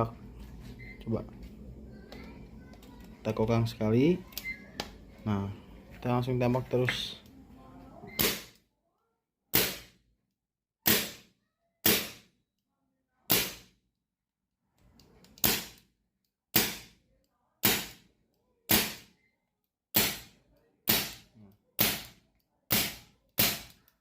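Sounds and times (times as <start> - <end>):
air rifle shots: 8.2 - 8.6, 16.6 - 16.9.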